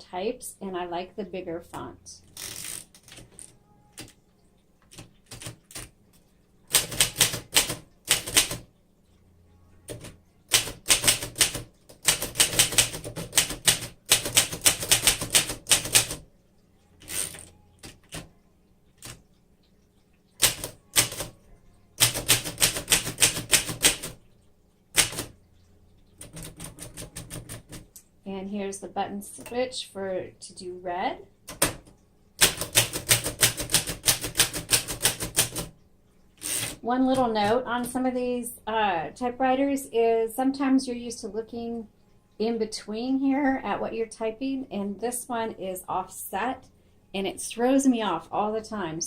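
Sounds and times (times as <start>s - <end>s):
manual typewriter typing: 2.4s - 4.2s, 4.9s - 6.0s, 6.7s - 8.7s, 9.9s - 16.2s, 17.0s - 18.3s, 20.4s - 21.4s, 22.0s - 24.2s, 24.9s - 25.4s, 26.2s - 27.9s, 32.4s - 35.8s, 36.4s - 37.4s.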